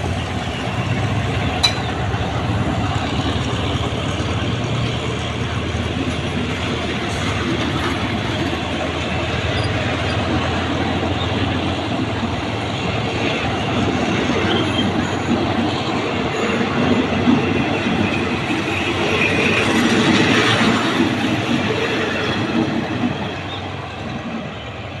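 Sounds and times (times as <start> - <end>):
train wheels rumbling on rails: 0.0 - 25.0
wheel squeal: 9.5 - 10.4.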